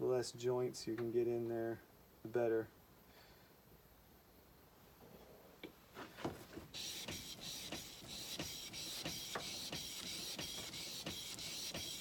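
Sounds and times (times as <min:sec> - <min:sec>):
chisel rasping on sharpening stone: 0:06.8 - 0:12.0.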